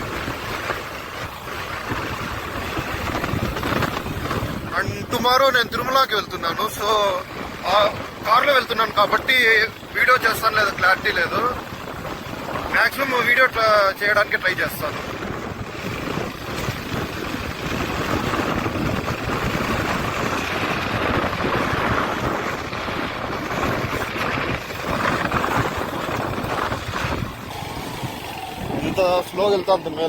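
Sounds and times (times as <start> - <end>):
motorcycle engine running: 0.0 - 5.6, 6.3 - 30.0
wind rushing on microphone: 0.0 - 30.0.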